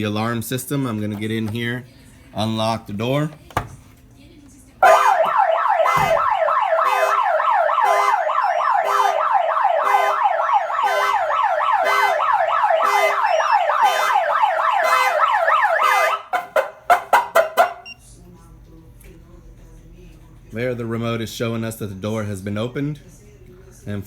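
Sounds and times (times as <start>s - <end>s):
car alarm siren wailing: 4.8s - 18.0s.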